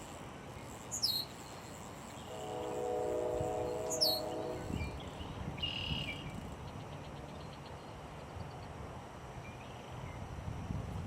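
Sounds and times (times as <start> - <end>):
low steady background noise: 0.0 - 11.0
rapid high chirping: 0.6 - 1.8.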